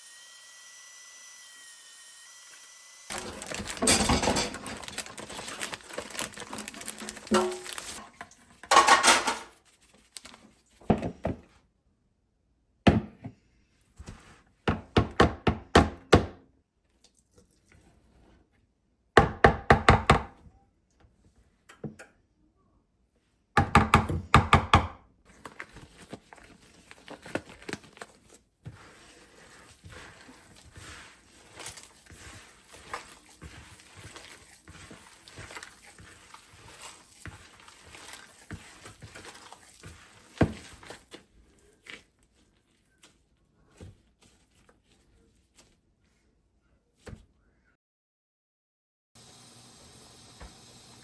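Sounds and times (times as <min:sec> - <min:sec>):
light rustling and crinkling: 0:03.1 - 0:08.8, 0:25.3 - 0:46.2.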